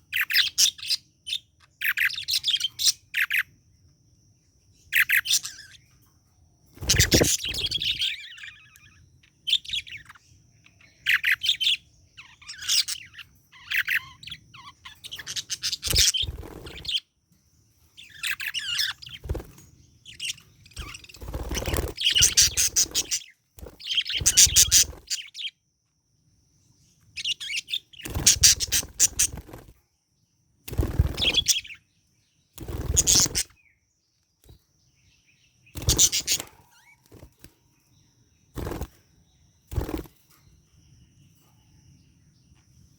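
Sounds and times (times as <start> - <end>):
budgerigar chirping and chattering: 0.1 - 3.5, 4.9 - 5.8, 6.8 - 17.0, 18.0 - 19.2, 20.1 - 25.6, 27.2 - 29.4, 31.0 - 31.8, 32.8 - 33.5, 35.7 - 37.0.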